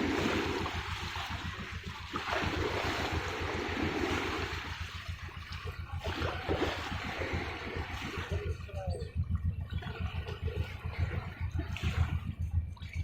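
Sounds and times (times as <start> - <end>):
low rumble: 0.0 - 13.0
ocean waves breaking: 0.0 - 13.0.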